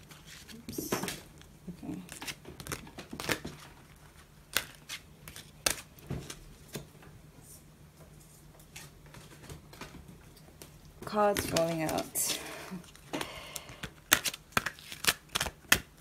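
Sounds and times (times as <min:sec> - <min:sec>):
cards rustling: 0:10.6 - 0:16.0
cards snapping and tapping: 0:13.2 - 0:16.0.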